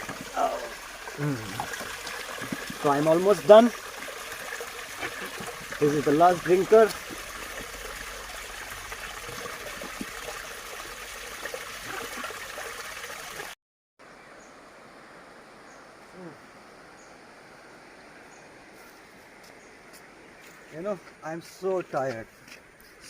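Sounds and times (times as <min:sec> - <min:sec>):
water running from tap: 0:00.0 - 0:13.6
outdoor ambience: 0:00.0 - 0:23.0.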